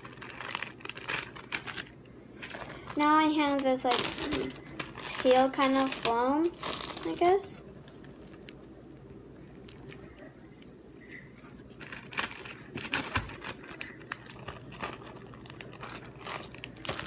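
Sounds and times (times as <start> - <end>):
foam slime crackling: 2.4 - 10.0, 11.7 - 17.0.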